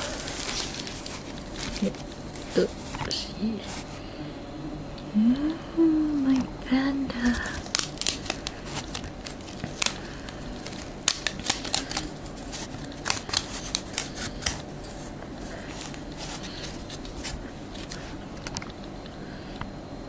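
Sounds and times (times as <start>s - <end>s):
cardboard clicks and crinkles: 0.0s - 3.1s, 7.2s - 18.7s.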